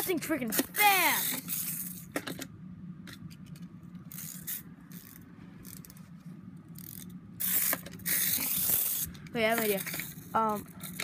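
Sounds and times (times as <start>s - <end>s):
clockwork toy whirring: 0.0s - 2.4s, 4.0s - 6.0s, 6.7s - 11.0s.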